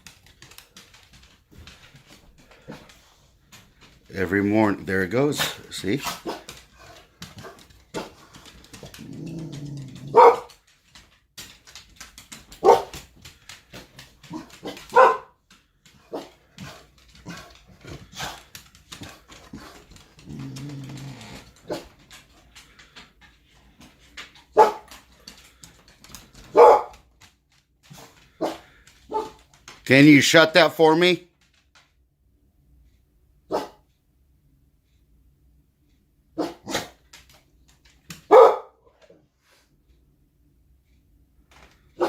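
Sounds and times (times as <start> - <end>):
dog barking: 5.4 - 6.5, 10.0 - 10.5, 12.6 - 13.0, 14.3 - 15.4, 24.5 - 24.9, 26.5 - 27.0, 28.4 - 29.4, 33.5 - 33.8, 36.4 - 37.0, 38.3 - 38.8
dog growling low: 8.0 - 10.2, 16.2 - 21.9.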